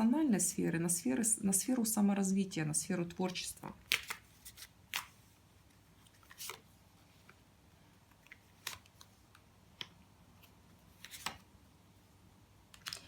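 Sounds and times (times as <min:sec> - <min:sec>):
cards tapping and flicking: 0:03.8 - 0:05.1.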